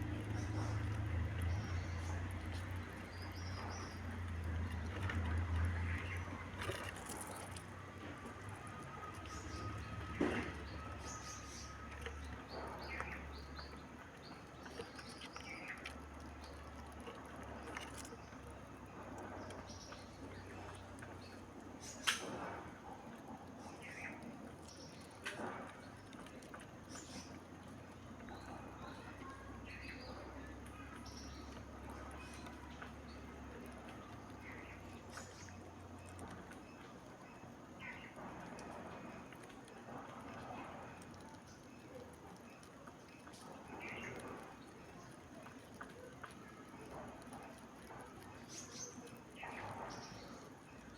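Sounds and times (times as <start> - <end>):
low steady hum: 0.0 - 50.9
small birds chirping: 0.0 - 50.9.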